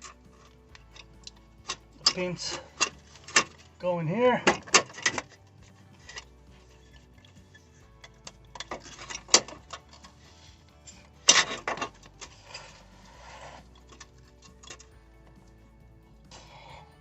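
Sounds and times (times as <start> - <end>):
sharp clicks and knocks: 0.0 - 12.9.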